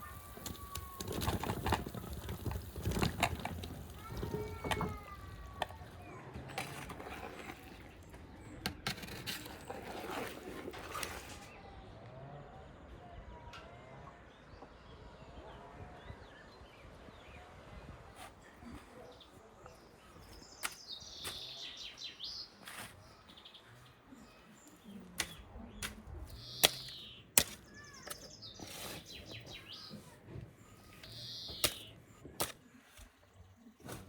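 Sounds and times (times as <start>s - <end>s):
small birds chirping: 0.0s - 10.2s, 16.3s - 34.0s.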